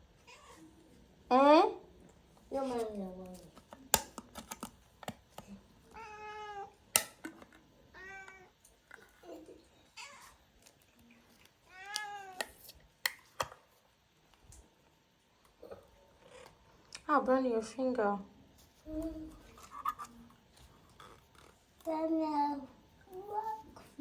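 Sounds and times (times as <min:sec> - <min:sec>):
cats meowing: 0:00.2 - 0:00.8, 0:05.9 - 0:06.8, 0:07.9 - 0:08.6, 0:09.9 - 0:10.4, 0:11.6 - 0:12.5.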